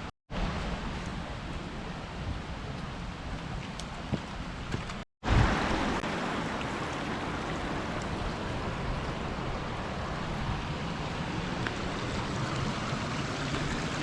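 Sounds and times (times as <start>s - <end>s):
waterfall rushing: 5.2s - 14.0s.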